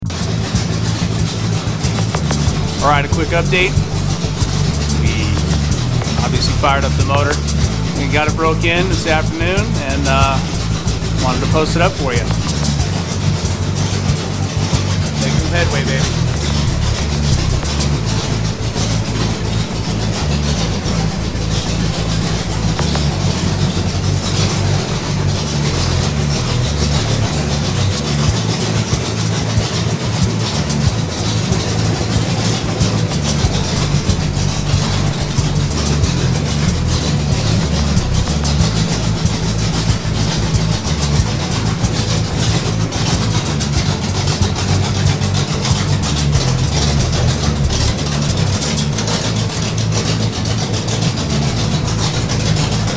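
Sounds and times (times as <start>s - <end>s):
car engine idling: 0.0s - 52.9s.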